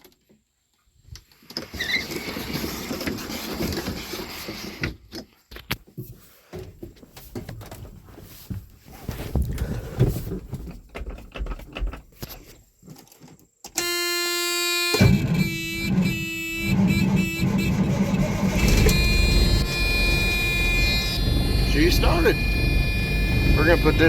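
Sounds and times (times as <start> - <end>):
knocks and rattles: 10.1 - 12.2
electronic warning tone: 13.8 - 24.0
diesel engine cranking and running: 15.0 - 24.0.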